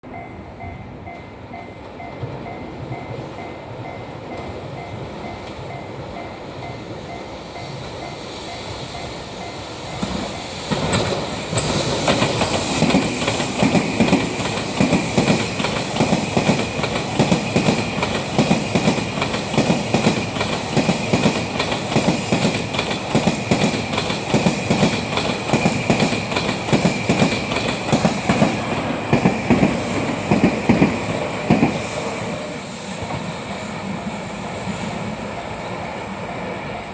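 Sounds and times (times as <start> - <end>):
freight train wheels clattering: 6.6 - 36.0
level crossing bell ringing: 19.7 - 20.3, 22.0 - 22.8.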